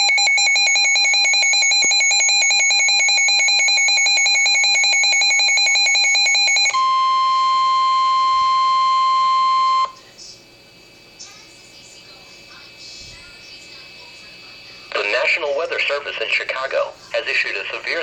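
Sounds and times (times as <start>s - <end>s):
pulsing buzzy alarm tone: 0.0s - 10.0s
steady pure tone: 6.7s - 18.0s.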